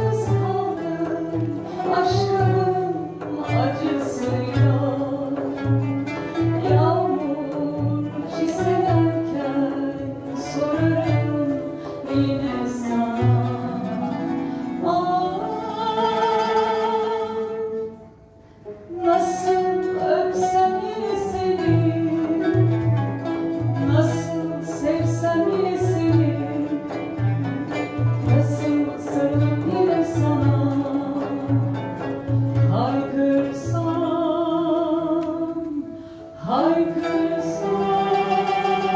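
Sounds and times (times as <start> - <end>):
person singing: 32.7 - 38.9.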